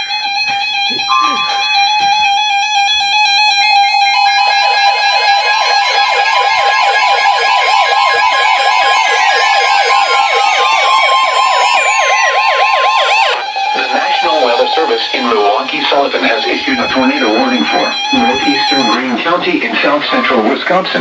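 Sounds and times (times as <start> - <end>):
steady warning alarm tone: 0.0 - 21.0
tone gliding downward: 0.9 - 3.1, 3.7 - 20.0
fast siren-like warble: 0.9 - 21.0.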